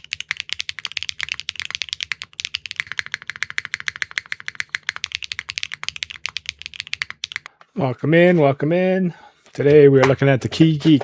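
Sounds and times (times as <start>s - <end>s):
fast mechanical keyboard typing: 0.0s - 7.5s.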